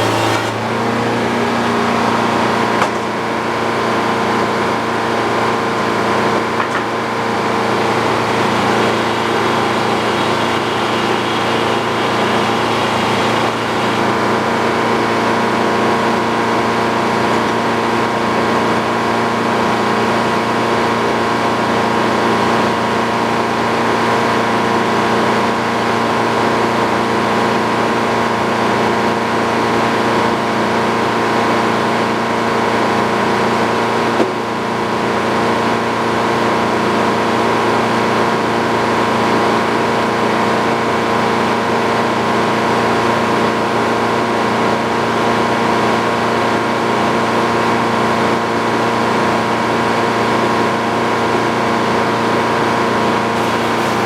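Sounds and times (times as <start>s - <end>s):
sawmill engine running: 0.0s - 36.1s, 51.8s - 54.0s.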